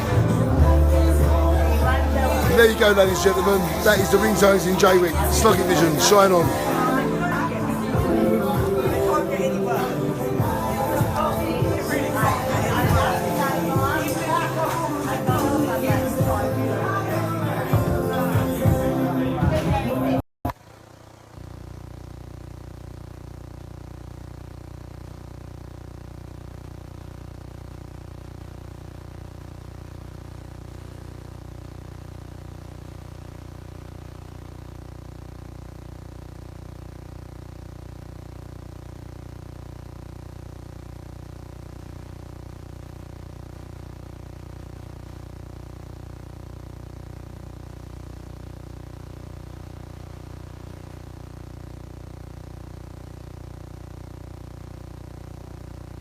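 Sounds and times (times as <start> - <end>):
low hum: 20.5 - 56.0.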